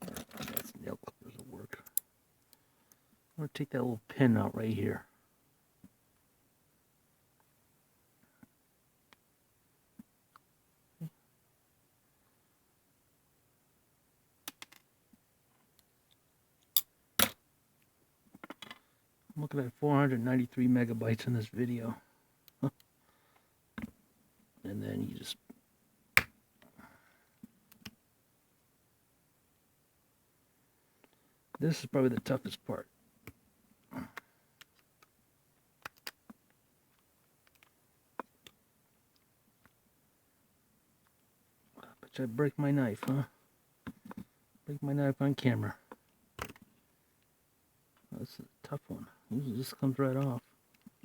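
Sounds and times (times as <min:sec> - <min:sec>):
plastic parts clicking: 0:35.8 - 0:39.8, 0:46.0 - 0:46.7.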